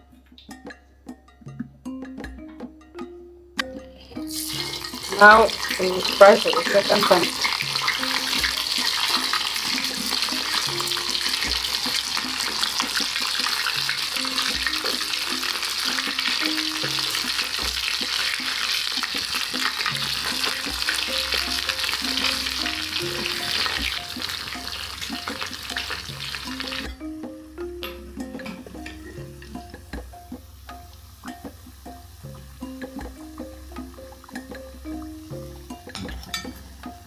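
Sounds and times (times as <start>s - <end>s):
plantain sizzling in hot oil: 4.0s - 37.0s.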